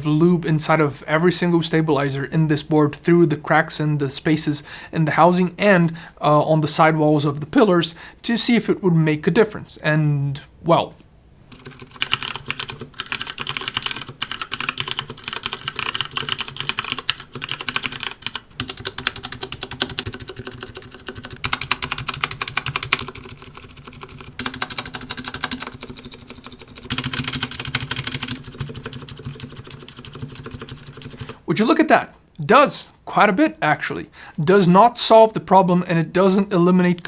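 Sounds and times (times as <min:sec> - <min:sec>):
mechanical keyboard typing: 0:11.5 - 0:31.4.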